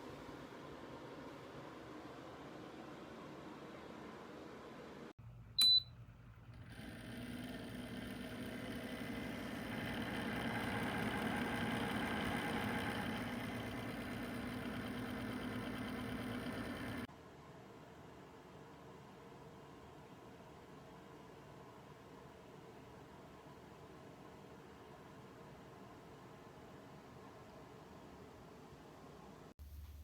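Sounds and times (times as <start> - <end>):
heater fan whirring: 0.0 - 30.0
sharp electronic beep: 5.6 - 5.9.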